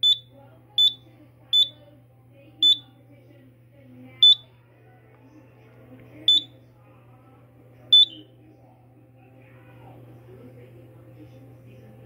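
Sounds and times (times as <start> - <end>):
fire alarm beeps: 0.0 - 1.8, 2.6 - 2.8, 4.2 - 4.4, 6.3 - 6.5, 7.9 - 8.2
steady low hum: 0.0 - 12.0.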